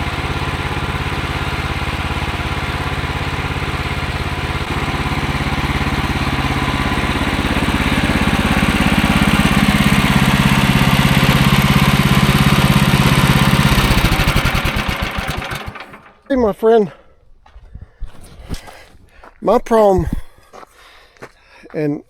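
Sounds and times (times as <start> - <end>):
small gasoline engine running: 0.0 - 16.3.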